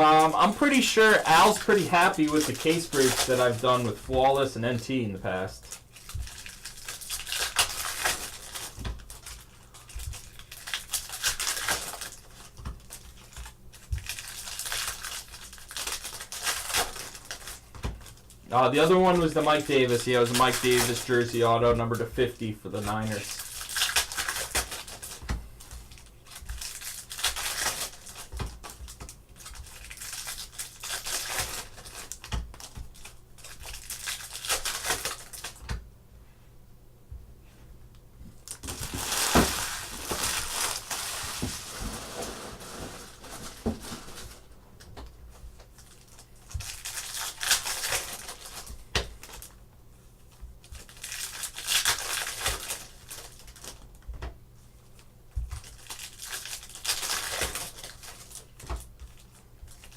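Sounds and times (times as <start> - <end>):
plastic and foil packaging tearing: 0.0 - 22.0, 22.8 - 25.2, 25.9 - 35.6, 38.4 - 44.6, 45.7 - 49.6, 50.7 - 54.0, 55.6 - 59.9.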